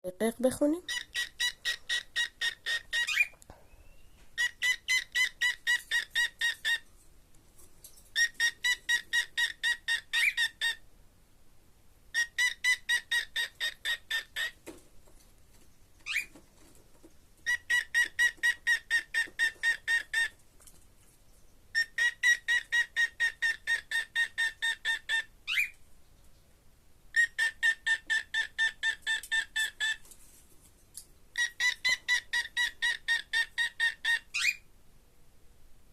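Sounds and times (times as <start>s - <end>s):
cockatiel pulsed calls: 0.9s - 3.4s, 4.4s - 6.8s, 8.1s - 10.8s, 12.1s - 14.6s, 16.0s - 16.3s, 17.4s - 20.4s, 21.7s - 25.8s, 27.1s - 30.0s, 31.4s - 34.7s.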